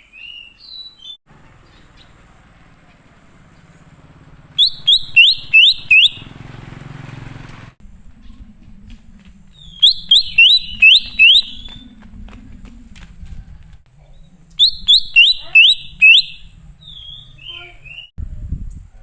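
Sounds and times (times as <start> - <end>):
bird whistling rising notes: 4.5 - 6.5, 9.5 - 12.1, 14.3 - 18.1.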